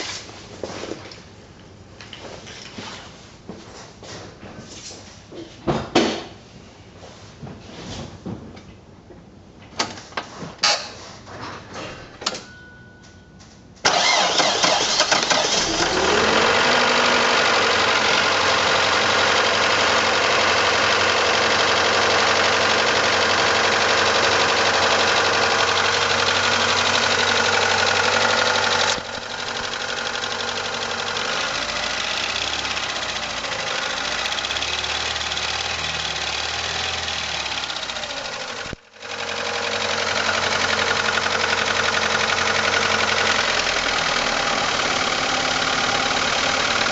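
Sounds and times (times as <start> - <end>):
car engine starting and running: 13.8 - 46.9
engine knocking: 15.4 - 46.9.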